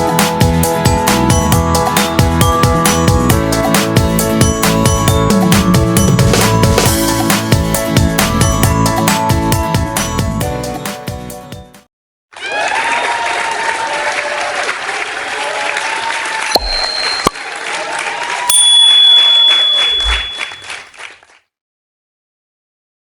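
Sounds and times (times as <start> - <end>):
crowd clapping and cheering: 12.3 - 18.5, 19.5 - 21.4
bright dings: 16.6 - 17.5, 18.5 - 20.8.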